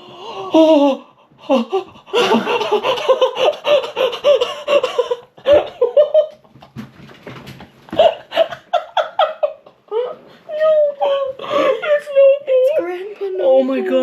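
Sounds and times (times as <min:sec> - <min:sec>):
person laughing hard: 0:01.6 - 0:06.4.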